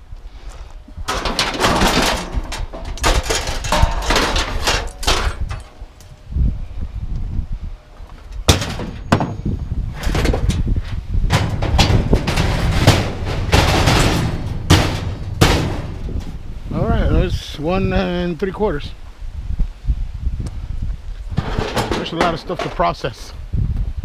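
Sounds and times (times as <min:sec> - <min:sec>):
wind rumbling on microphone: 0:00.0 - 0:24.0
scrap metal clanking: 0:01.0 - 0:05.8, 0:10.0 - 0:16.4, 0:21.3 - 0:23.0.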